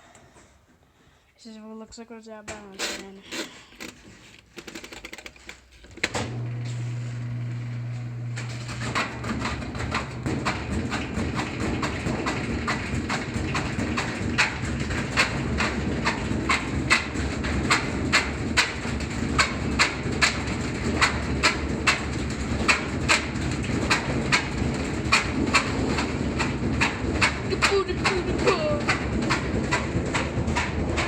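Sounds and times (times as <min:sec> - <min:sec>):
washing machine spinning drone: 0:06.1 - 0:31.0
drum knocking: 0:08.8 - 0:31.0.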